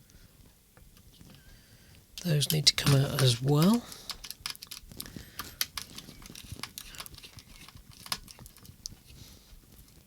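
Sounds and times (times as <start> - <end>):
screwdriver clicking on plastic case: 5.4 - 8.7.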